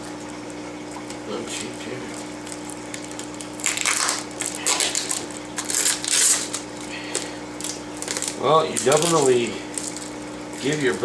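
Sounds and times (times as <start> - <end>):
packing tape peeling off plastic: 2.4 - 11.0.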